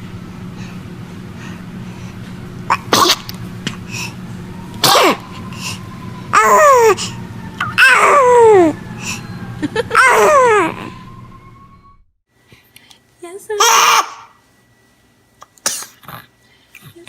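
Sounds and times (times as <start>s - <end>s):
baby sneezing: 2.7s - 3.3s, 4.8s - 5.2s, 13.6s - 14.3s, 15.6s - 16.0s.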